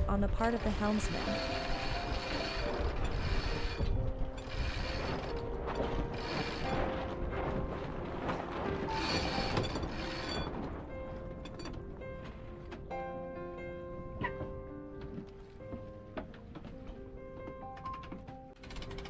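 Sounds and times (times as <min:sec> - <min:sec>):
background music: 0:00.0 - 0:19.0.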